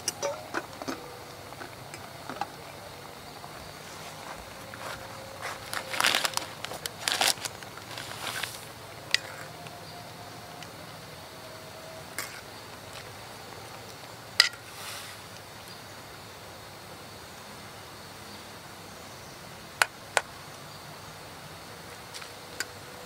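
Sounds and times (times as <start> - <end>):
handling clicks and rustles: 0.0 - 9.7
steady background hiss: 0.0 - 23.0.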